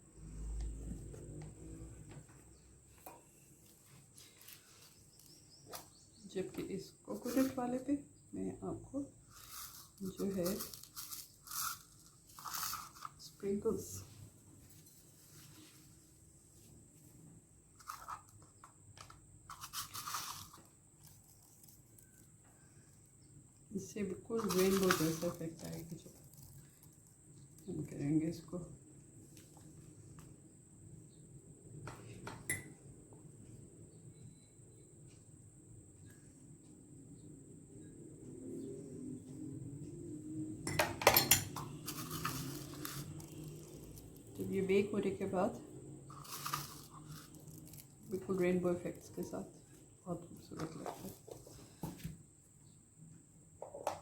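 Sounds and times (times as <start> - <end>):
sprinkles rattling from container: 9.3 - 13.4, 19.5 - 22.1, 24.4 - 27.2, 41.6 - 44.9, 46.1 - 49.3
kitchenware clattering: 40.7 - 42.3.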